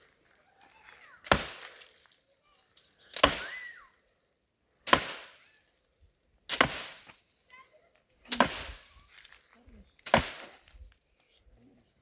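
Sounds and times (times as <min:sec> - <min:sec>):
axe chopping wood: 0:01.2 - 0:01.9, 0:03.2 - 0:03.8, 0:04.9 - 0:05.4, 0:06.5 - 0:07.2, 0:08.3 - 0:08.9, 0:10.0 - 0:10.7.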